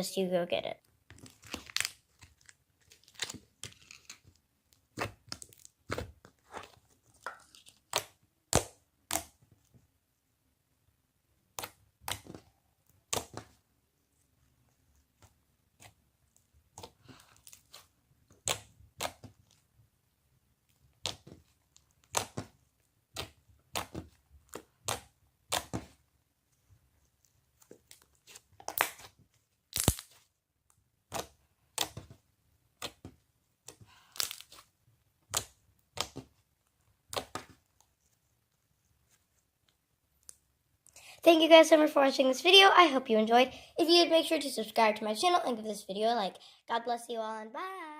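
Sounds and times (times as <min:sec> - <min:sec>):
slime popping and crackling: 0:01.1 - 0:06.2, 0:16.6 - 0:19.6, 0:27.8 - 0:30.2, 0:31.0 - 0:36.4.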